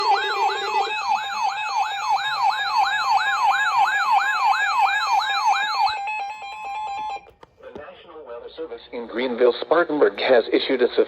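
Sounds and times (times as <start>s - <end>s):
electronic siren alert tone: 0.0s - 6.3s.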